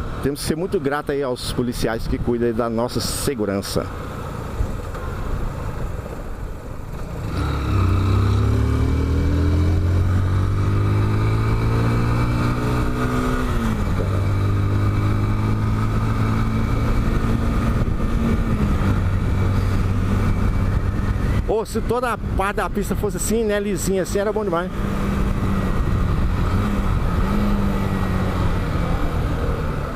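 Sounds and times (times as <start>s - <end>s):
motorcycle engine accelerating: 4.0s - 21.5s, 24.2s - 29.9s.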